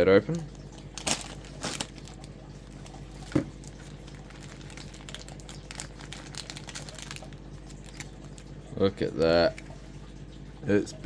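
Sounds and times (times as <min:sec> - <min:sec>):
packaging crinkling: 0:00.7 - 0:08.6.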